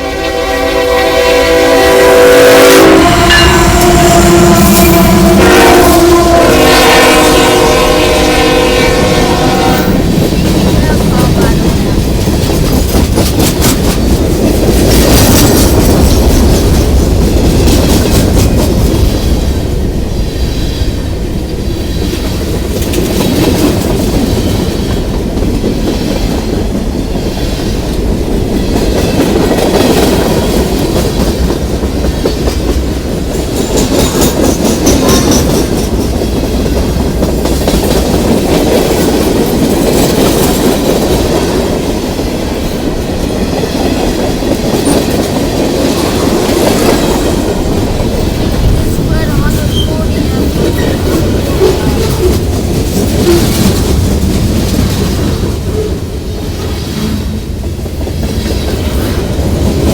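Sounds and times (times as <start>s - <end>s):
train wheels rumbling on rails: 0.0s - 59.9s
wheels clicking over rail joints: 10.0s - 20.0s.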